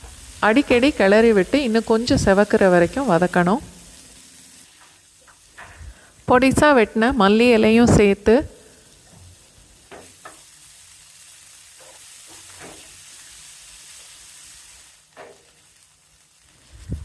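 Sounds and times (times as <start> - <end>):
cauliflower sizzling in oil: 0.0 - 17.0
scraping across pan: 11.6 - 15.8.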